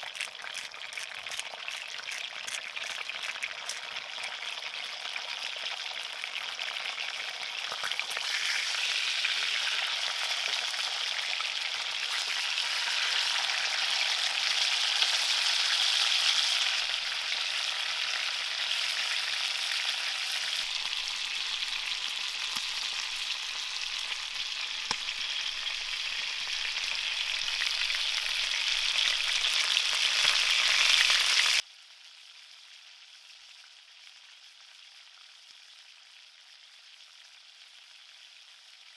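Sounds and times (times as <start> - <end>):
food frying sizzle: 0.0 - 38.9.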